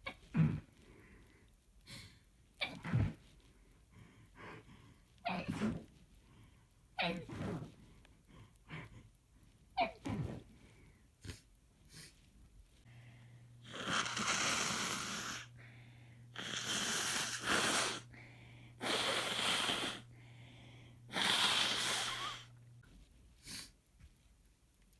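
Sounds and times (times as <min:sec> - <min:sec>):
low steady hum: 0:12.1 - 0:24.9
breathy wheezing blasts of air: 0:13.6 - 0:18.1, 0:18.7 - 0:22.5
person sneezing: 0:16.6 - 0:18.0, 0:21.1 - 0:22.5.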